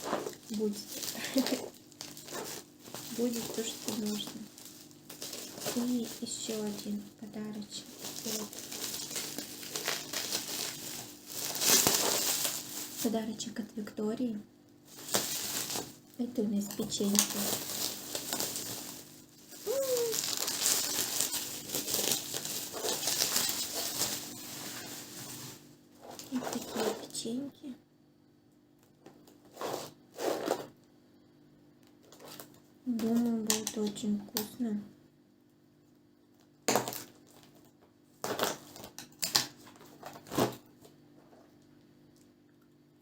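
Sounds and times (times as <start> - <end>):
plastic wrapping crinkling: 0.0 - 13.7, 14.9 - 27.2, 32.0 - 34.0, 36.7 - 41.5.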